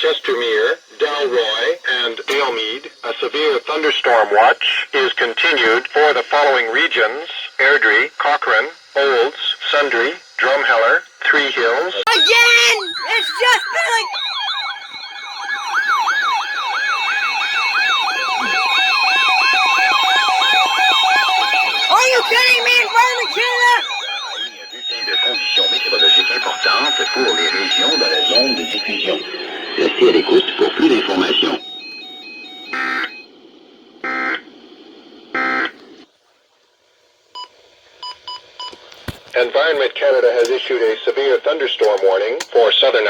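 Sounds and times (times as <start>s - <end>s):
faint hum: 0.0s - 13.7s, 17.2s - 43.0s
screechy digital data bursts: 0.0s - 33.3s
steady high tones: 0.0s - 36.0s
electronic alert tone sweeping: 18.2s - 33.3s.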